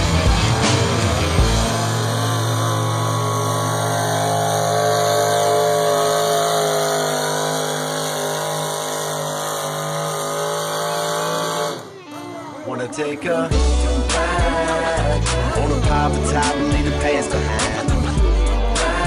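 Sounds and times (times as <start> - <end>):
engine at high revs under load: 0.0 - 12.0.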